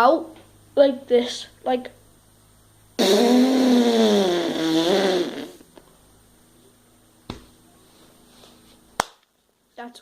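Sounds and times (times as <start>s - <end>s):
lips buzzing imitating car: 3.0s - 5.7s.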